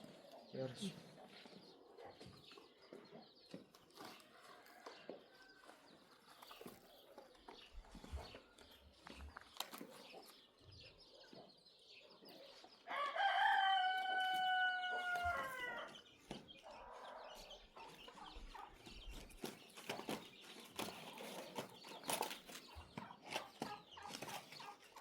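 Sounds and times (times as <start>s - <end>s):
rooster crowing: 12.9s - 15.9s.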